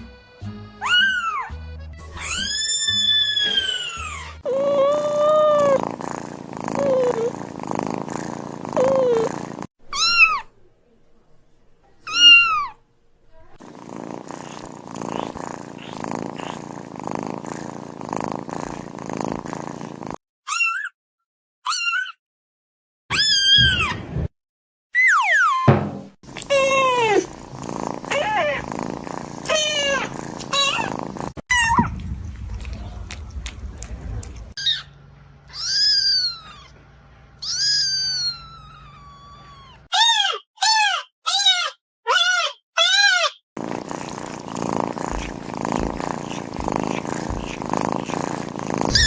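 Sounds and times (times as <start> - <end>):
high-pitched kitten meow: 0.8 - 1.5, 2.2 - 5.5, 9.9 - 10.5, 23.1 - 23.9, 35.5 - 36.7, 37.4 - 43.4
kitten purring: 3.4 - 10.4, 13.4 - 20.2, 26.3 - 34.6, 43.6 - 49.0.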